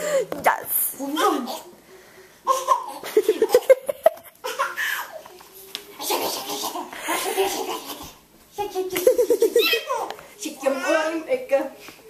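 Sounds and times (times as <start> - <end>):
giggles: 2.6 - 5.2, 6.1 - 10.0.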